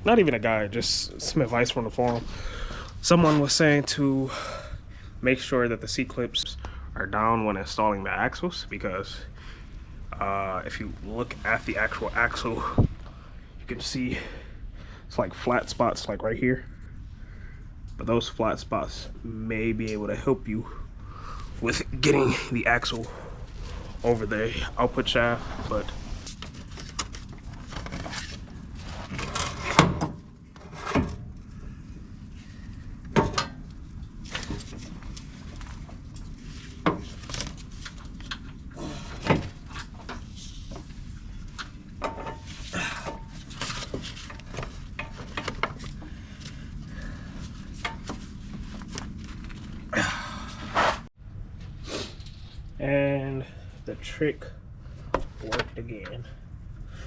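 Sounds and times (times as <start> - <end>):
steady low hum: 0.0 - 57.0
metal knocks and clunks: 33.1 - 33.6.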